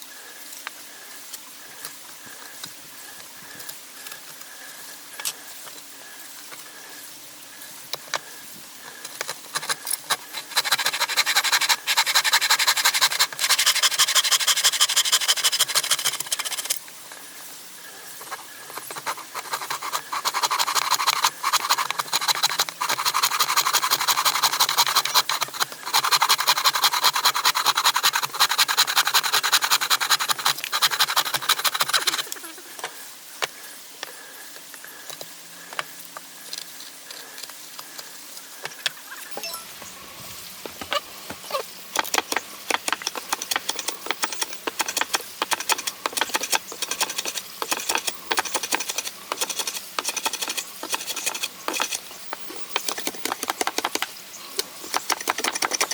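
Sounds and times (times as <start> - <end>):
scratchy rubbing on wood: 9.3 - 16.8, 18.3 - 32.4, 42.1 - 53.9.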